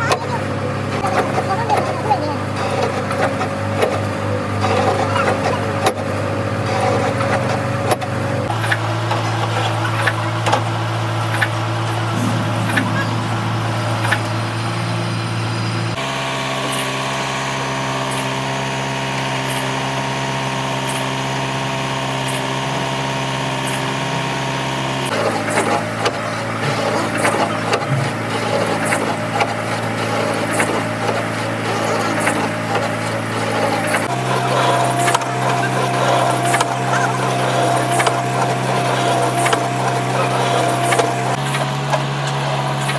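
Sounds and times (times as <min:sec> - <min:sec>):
machine motor humming: 0:09.8 - 0:16.0, 0:25.1 - 0:41.4.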